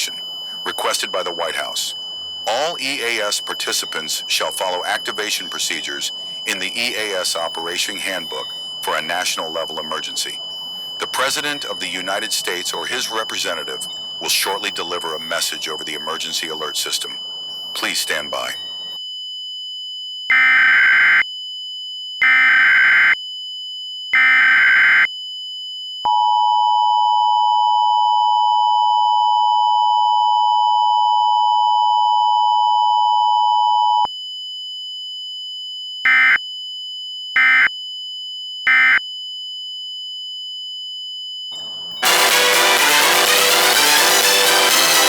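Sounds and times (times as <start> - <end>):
steady high-pitched tone: 0.0 - 19.0, 41.6 - 45.0
buzzing data bursts: 41.6 - 45.0
two-tone attention signal: 41.6 - 45.0.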